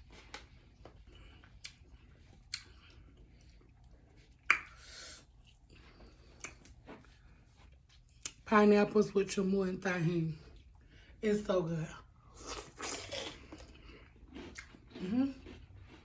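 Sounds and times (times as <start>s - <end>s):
person chewing: 0.0s - 8.4s, 12.3s - 16.0s
mouth smack: 4.5s - 4.8s.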